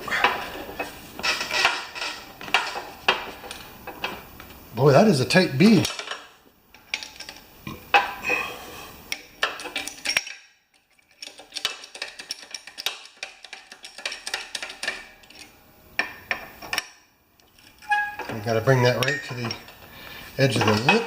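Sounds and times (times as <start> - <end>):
metal clanking: 0.0 - 4.2, 20.5 - 21.0
small metal clicks: 5.8 - 7.5, 9.1 - 18.4.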